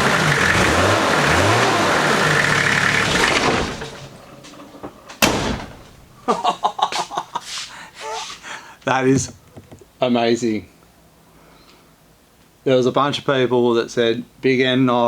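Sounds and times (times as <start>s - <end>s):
diesel engine revving: 0.0s - 4.6s.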